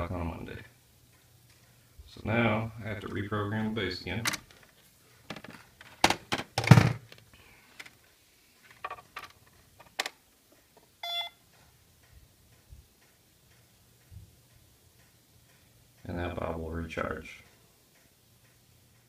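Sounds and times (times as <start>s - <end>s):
short electronic beep: 11.0s - 11.4s.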